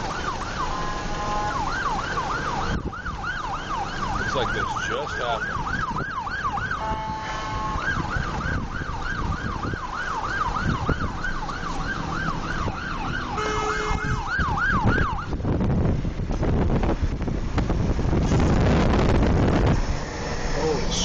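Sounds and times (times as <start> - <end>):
emergency siren yelping: 0.0 - 15.4
low road and wind rumble: 0.0 - 21.0
vehicle horn blasts: 0.7 - 1.7, 6.8 - 8.0, 13.4 - 14.2.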